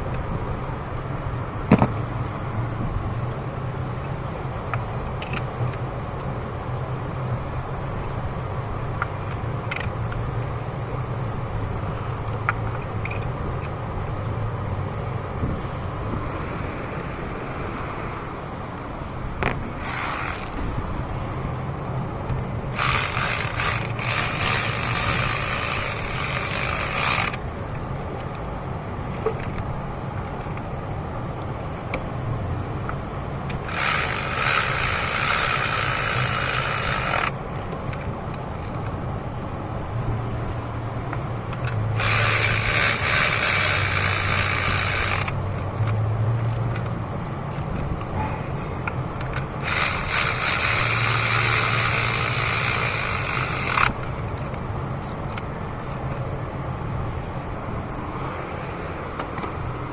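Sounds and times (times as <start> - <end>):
ratchet wrench clicking: 8.9 - 10.6, 19.7 - 20.8, 22.3 - 28.4, 29.1 - 30.6, 32.9 - 39.0, 41.5 - 48.0, 48.8 - 56.2.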